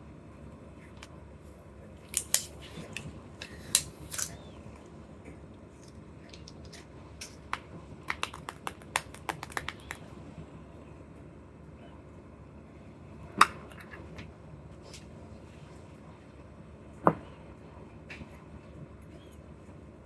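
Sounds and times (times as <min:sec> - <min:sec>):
packaging clicking and crackling: 0:02.0 - 0:04.4, 0:05.8 - 0:10.0.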